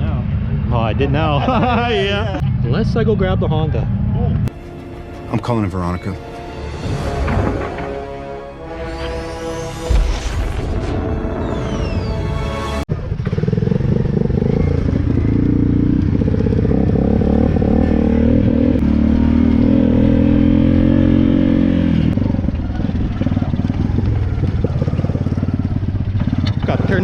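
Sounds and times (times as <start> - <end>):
atv engine revving and sputtering: 12.9 - 27.0.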